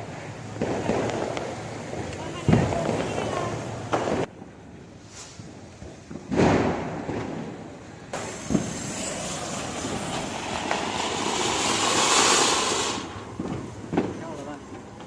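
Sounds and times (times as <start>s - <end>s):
firework hissing: 0.0s - 15.0s
firework sharp pop: 6.1s - 7.5s.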